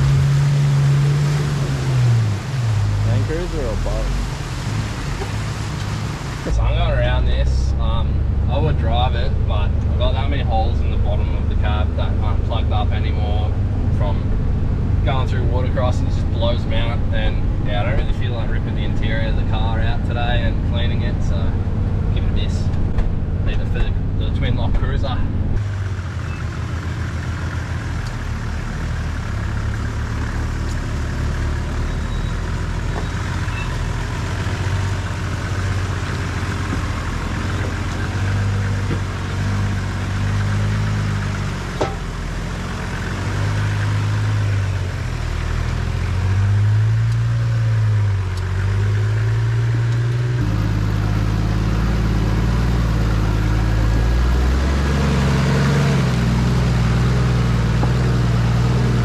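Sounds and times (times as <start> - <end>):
diesel engine at low revs: 0.0 - 59.0.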